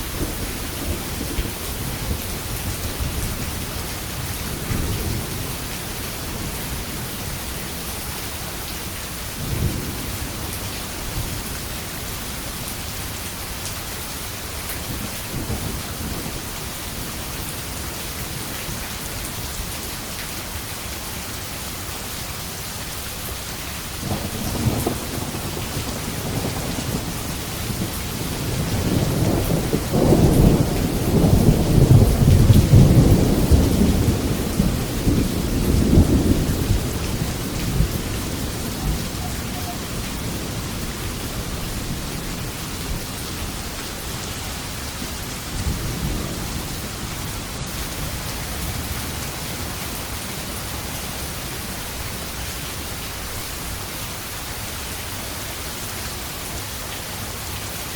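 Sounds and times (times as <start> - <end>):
steady rain falling: 0.0 - 57.9
thunder rumbling: 23.9 - 51.7.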